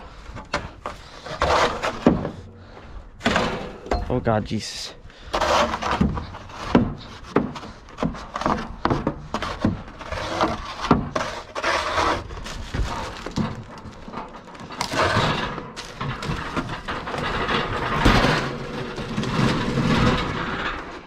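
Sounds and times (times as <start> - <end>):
hard breathing: 0.0 - 3.2, 5.0 - 6.4
scraping and rustling: 0.1 - 3.8, 4.6 - 21.0.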